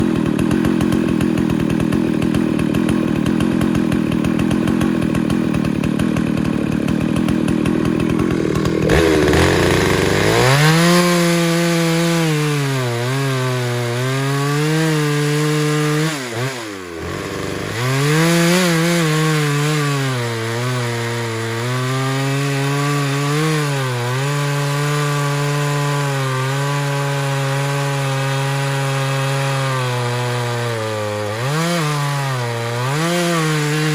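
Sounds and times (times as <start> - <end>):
chainsaw cutting wood: 0.0 - 33.9.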